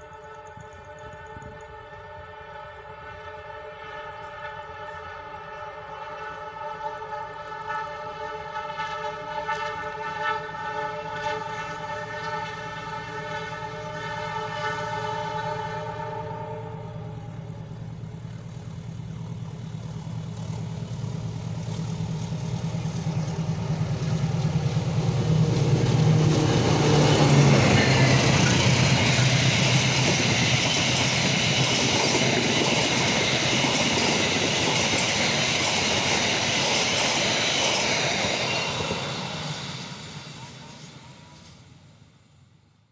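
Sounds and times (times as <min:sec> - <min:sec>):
train horn chord: 0:00.0 - 0:18.4, 0:25.1 - 0:30.5, 0:39.1 - 0:42.1
train carriages rumbling past: 0:00.0 - 0:42.4
locomotive engine drone: 0:10.8 - 0:42.0.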